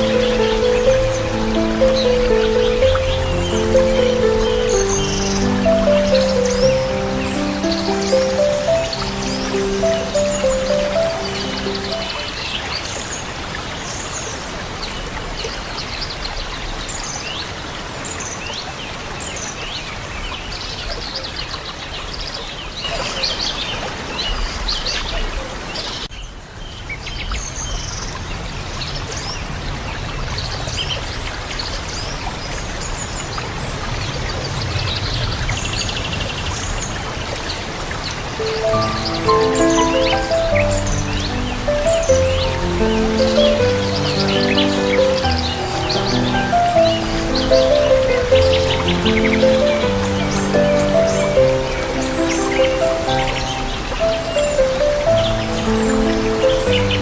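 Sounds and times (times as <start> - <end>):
small birds chirping: 0.0 - 13.2, 38.3 - 57.0
flowing stream water: 0.0 - 26.1, 27.3 - 57.0.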